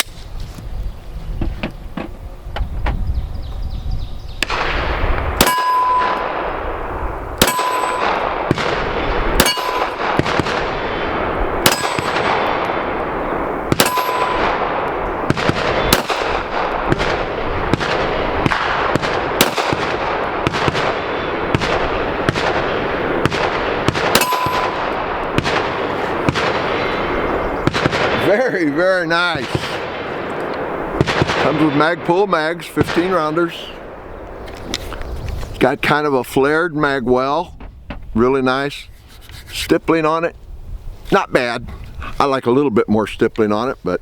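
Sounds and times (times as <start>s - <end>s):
pistol shots: 4.4s - 28.4s, 29.3s - 34.4s
distant gunfire: 4.4s - 28.6s, 29.4s - 34.2s
metallic ring: 5.4s - 6.4s, 7.4s - 8.2s, 9.4s - 10.0s, 13.8s - 14.6s, 24.2s - 24.8s.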